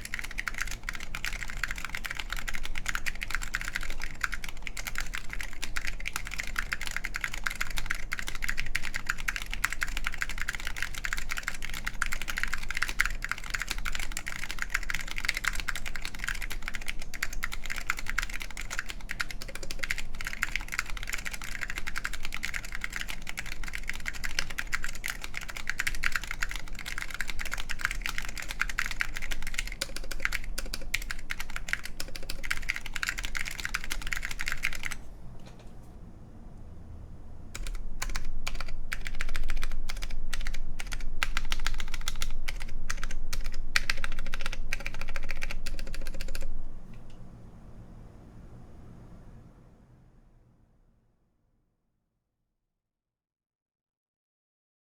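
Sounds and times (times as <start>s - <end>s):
fast mechanical keyboard typing: 0.0s - 35.0s, 37.6s - 46.5s.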